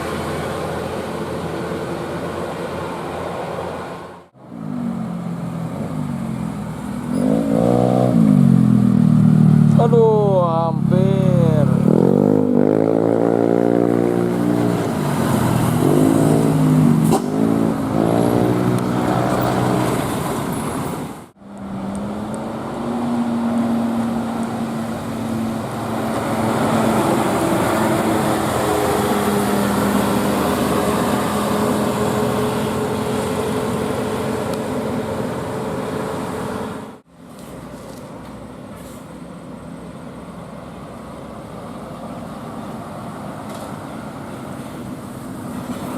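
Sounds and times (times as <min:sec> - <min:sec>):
bus engine: 0:00.0 - 0:45.9
road traffic noise: 0:00.0 - 0:45.9.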